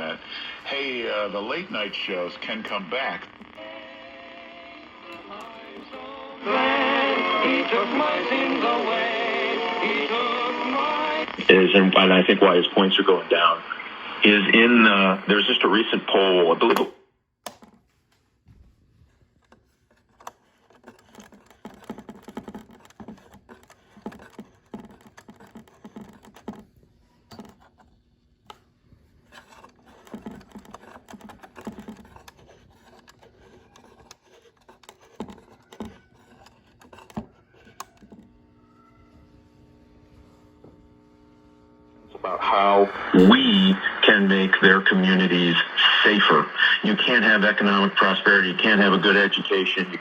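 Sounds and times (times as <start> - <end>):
radio speech: 0.0 - 3.9, 9.6 - 17.0, 42.1 - 50.0
radio static crackles and clicks: 0.0 - 17.8, 19.4 - 50.0
steady radio tones: 0.0 - 17.8, 19.2 - 50.0.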